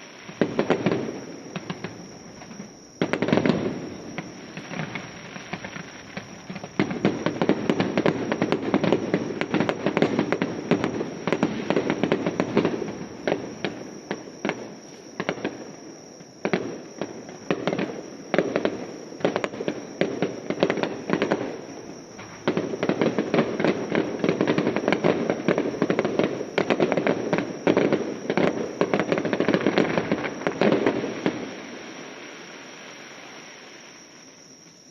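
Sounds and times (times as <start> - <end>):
fireworks bangs and crackles: 0.0 - 34.9.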